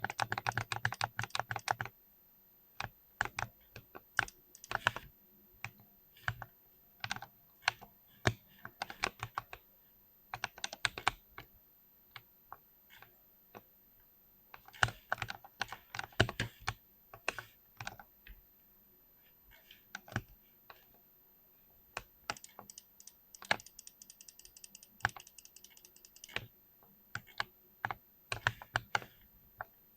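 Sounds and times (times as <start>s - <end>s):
mechanical keyboard typing: 0.0s - 1.9s, 2.8s - 5.0s, 22.0s - 26.5s.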